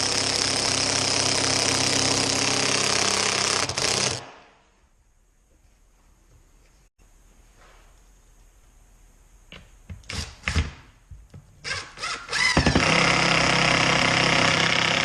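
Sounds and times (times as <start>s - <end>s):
power drill driving a screw: 0.0s - 4.3s, 11.6s - 15.0s.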